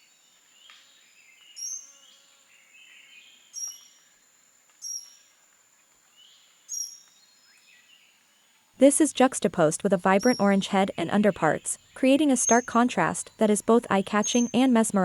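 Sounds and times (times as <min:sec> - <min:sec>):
soft bird chirps: 0:02.8 - 0:04.0
sharp high bird calls: 0:09.6 - 0:15.0.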